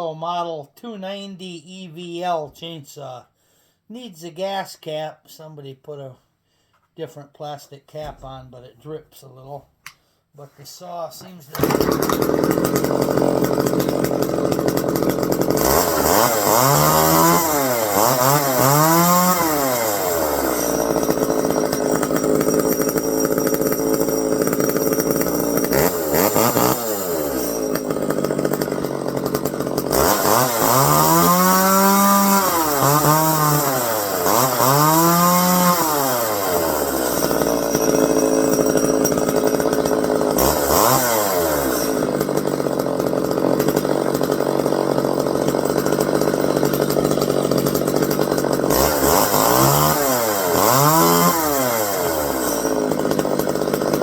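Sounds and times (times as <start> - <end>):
man talking: 0.0 - 3.3, 3.9 - 6.2, 7.0 - 9.7, 10.4 - 11.6
chainsaw idling and revving: 11.5 - 54.0.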